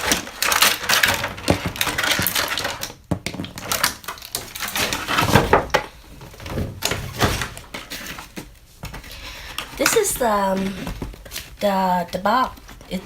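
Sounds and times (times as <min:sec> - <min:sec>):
plastic toy pieces clicking and rattling: 0:00.0 - 0:05.4
packaging crinkling: 0:00.0 - 0:13.0.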